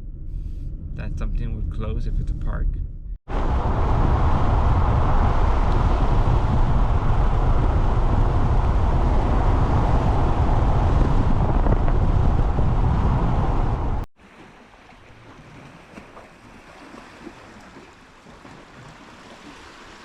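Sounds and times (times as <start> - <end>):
wind buffeting microphone: 2.3 - 14.1.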